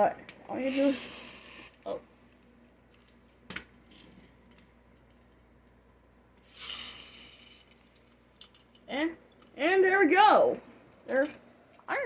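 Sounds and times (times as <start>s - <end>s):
toy motor whirring buzz: 0.5s - 1.8s, 6.4s - 7.8s
toy motor click: 0.5s - 1.9s, 6.4s - 7.8s.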